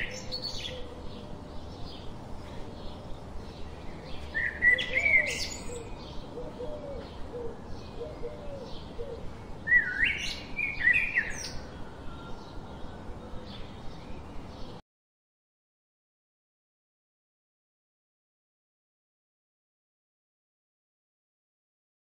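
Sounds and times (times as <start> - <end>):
soft bird chirps: 0.0 - 14.8
birds whistling: 4.0 - 14.7.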